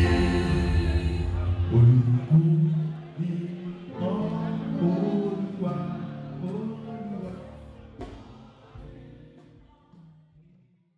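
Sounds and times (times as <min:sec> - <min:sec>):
choir singing with instruments: 0:00.0 - 0:02.4, 0:03.9 - 0:09.7.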